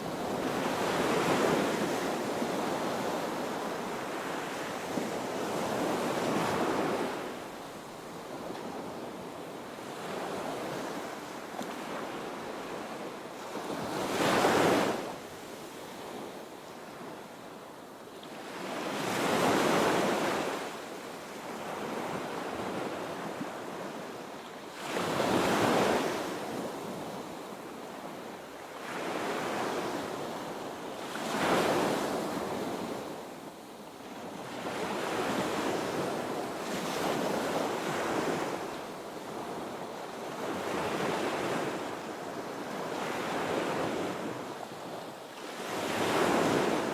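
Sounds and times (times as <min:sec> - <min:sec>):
ocean waves breaking on a beach: 0:00.0 - 0:46.9.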